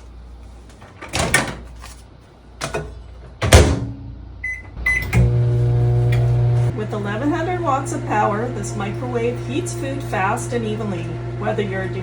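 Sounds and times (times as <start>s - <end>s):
microwave oven humming: 3.5s - 12.0s
keypad beeps: 4.4s - 5.1s.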